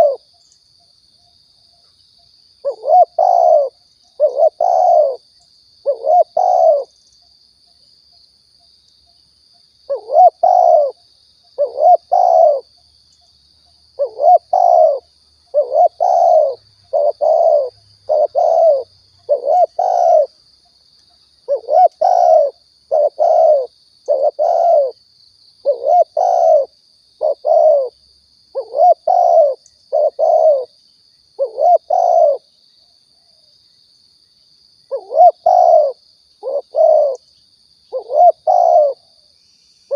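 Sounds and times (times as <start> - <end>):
dove cooing: 0.0 - 0.3, 2.6 - 7.0, 9.9 - 11.0, 11.6 - 12.7, 14.0 - 20.4, 21.5 - 25.0, 25.6 - 30.7, 31.4 - 32.5, 34.9 - 37.2, 37.9 - 39.1.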